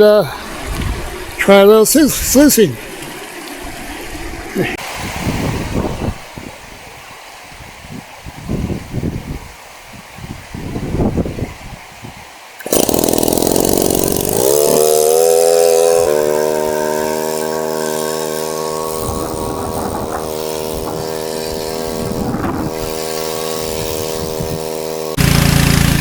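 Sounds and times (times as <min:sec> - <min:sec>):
small gasoline engine running: 0:12.6 - 0:26.0.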